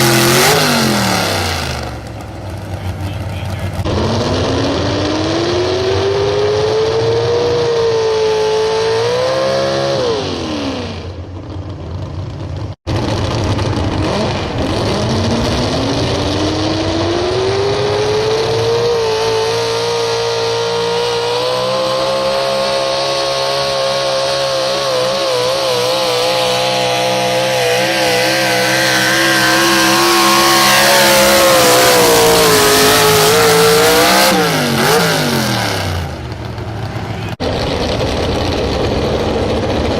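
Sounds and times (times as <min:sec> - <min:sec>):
truck engine revving: 0:00.0 - 0:39.9.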